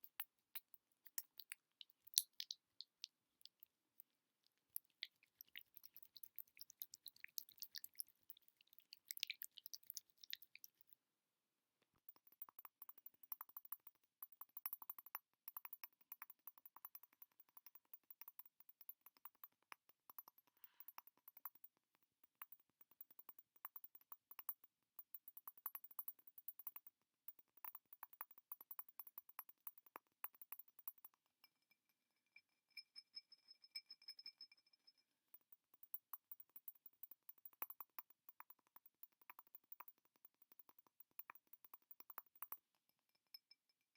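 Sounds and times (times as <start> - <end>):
rapid tapping on objects: 4.7 - 10.9, 12.0 - 31.4, 35.4 - 42.9
faint steady ringing tone: 12.0 - 43.9.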